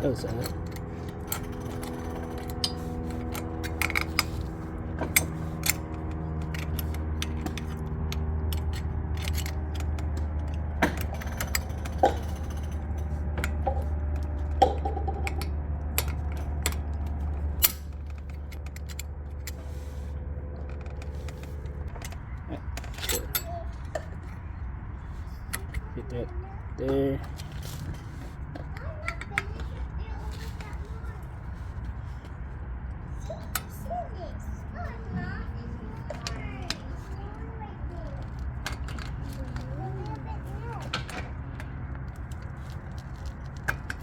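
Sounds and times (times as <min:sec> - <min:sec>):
low hum: 0:00.0 - 0:44.0
metal clicks and scrapes: 0:00.1 - 0:24.4.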